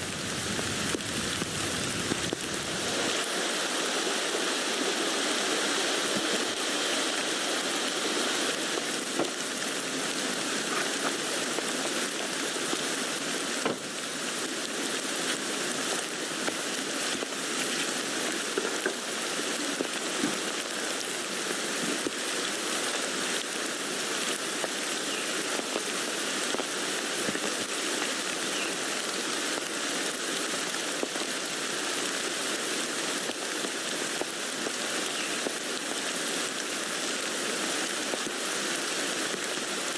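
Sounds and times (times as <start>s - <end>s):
rain falling on a tent: 0.0s - 39.9s.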